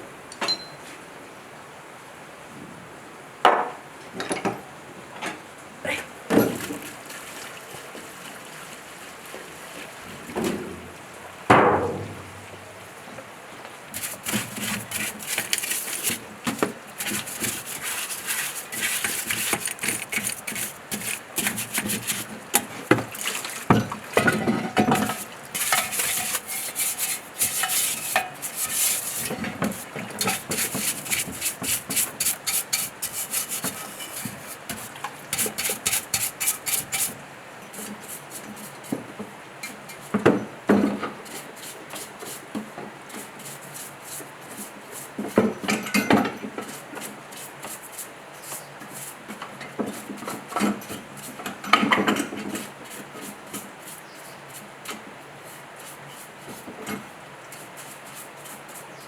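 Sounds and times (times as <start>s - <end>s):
metal parts scraped: 14.0s - 22.7s, 24.8s - 37.2s.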